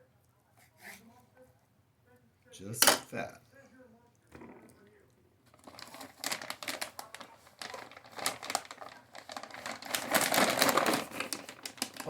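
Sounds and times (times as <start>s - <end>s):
plastic bag crinkling: 5.5s - 12.0s.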